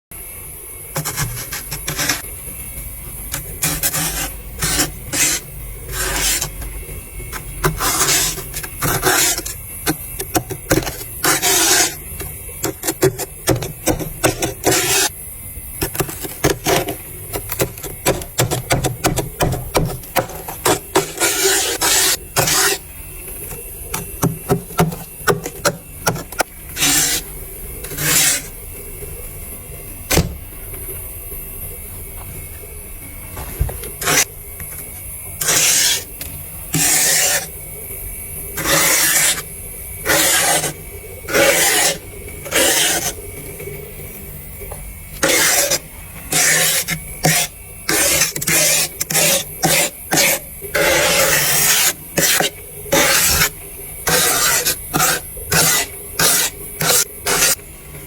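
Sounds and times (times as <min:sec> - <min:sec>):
freezer low hum: 0:00.0 - 0:58.0
frost scraping: 0:03.3 - 0:06.7, 0:07.3 - 0:12.0, 0:12.6 - 0:15.1, 0:15.8 - 0:22.8, 0:23.5 - 0:28.5, 0:34.0 - 0:34.3, 0:35.4 - 0:36.1, 0:36.7 - 0:37.5, 0:38.6 - 0:39.5, 0:40.1 - 0:43.2, 0:45.2 - 0:53.5, 0:54.1 - 0:57.6.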